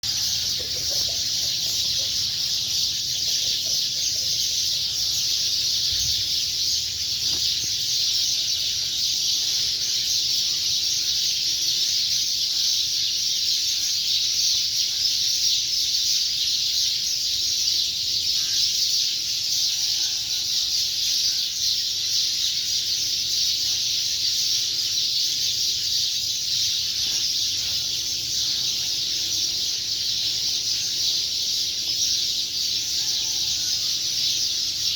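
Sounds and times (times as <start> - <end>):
many small birds chirping: 0.0 - 34.9.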